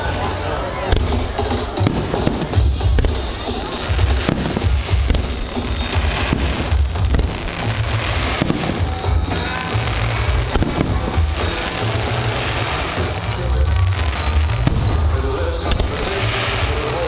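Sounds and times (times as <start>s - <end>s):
fireworks bangs: 0.0s - 17.0s
music playing: 0.0s - 17.0s
low booming rumble: 0.9s - 13.5s, 14.4s - 16.9s.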